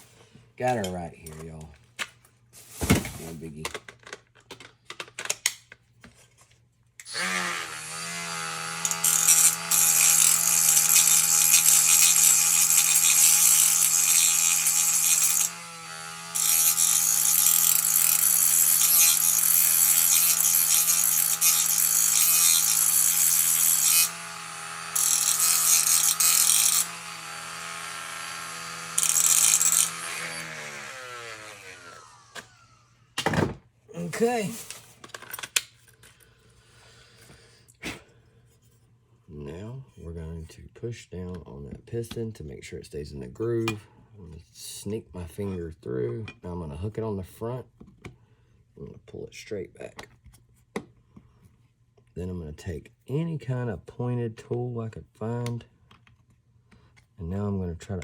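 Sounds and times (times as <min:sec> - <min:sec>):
loud metal grinding: 0:07.1 - 0:32.4
electric grinder running: 0:07.1 - 0:32.9.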